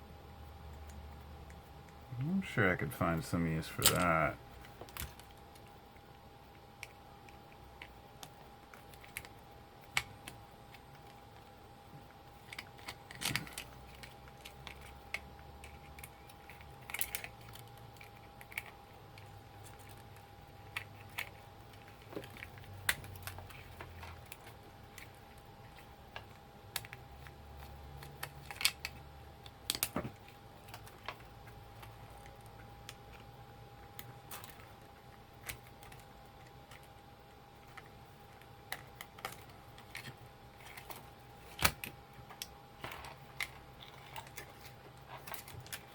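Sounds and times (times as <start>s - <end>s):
plastic and metal parts clicking: 12.4s - 33.2s.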